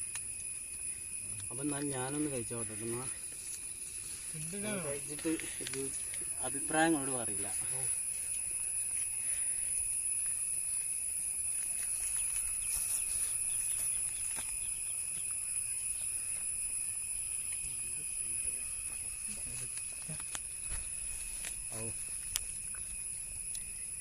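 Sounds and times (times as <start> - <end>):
insect chorus: 0.0 - 24.0.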